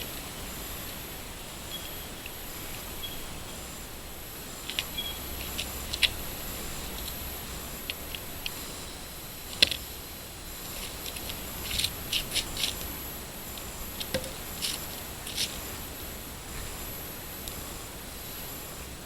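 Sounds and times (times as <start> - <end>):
knock on wood: 14.1 - 14.4.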